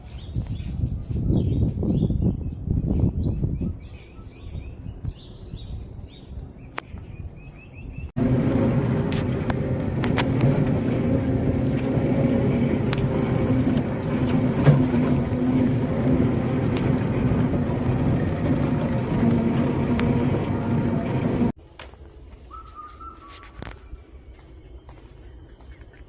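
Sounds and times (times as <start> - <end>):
birds chirping: 0.0 - 21.5, 22.5 - 26.0
motor vehicle hum: 5.8 - 21.6
road noise: 8.1 - 21.6.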